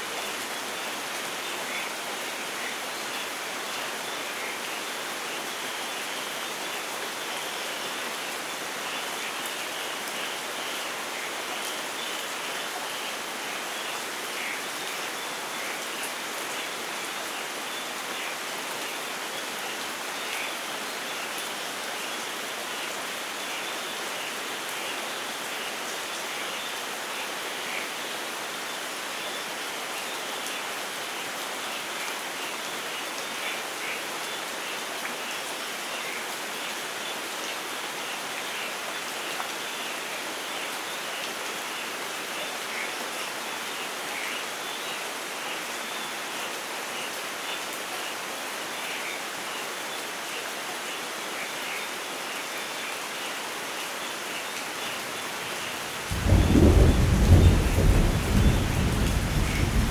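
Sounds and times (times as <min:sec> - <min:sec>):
steady rain hiss: 0:00.0 - 0:59.9.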